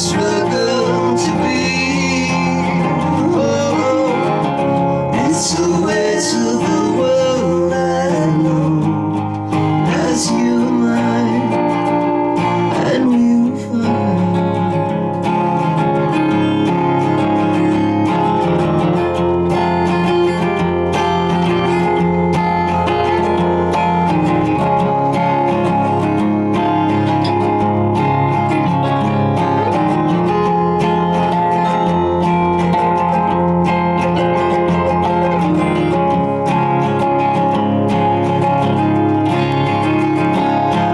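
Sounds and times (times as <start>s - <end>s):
person singing: 0.0s - 18.6s, 19.5s - 40.9s
guitars strumming chords: 0.0s - 40.9s
rock band playing: 15.0s - 40.9s.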